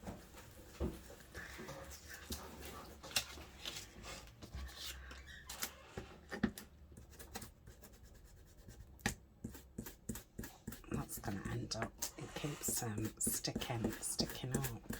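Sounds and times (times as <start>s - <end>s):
paper rustling: 0.2s - 6.0s.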